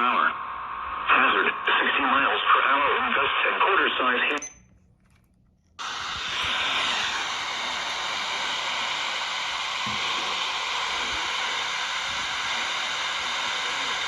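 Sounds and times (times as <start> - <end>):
radio static hiss: 0.0 - 4.4.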